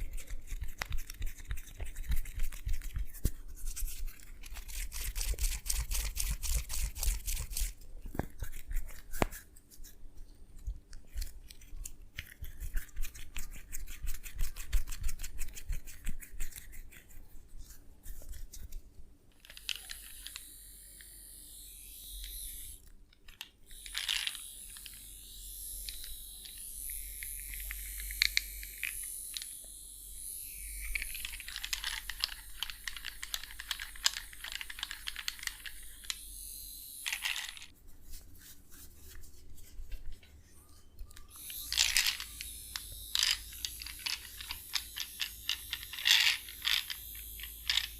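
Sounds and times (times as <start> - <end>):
sharp clicking strokes: 0.0 - 10.0, 30.4 - 36.4, 37.0 - 39.8.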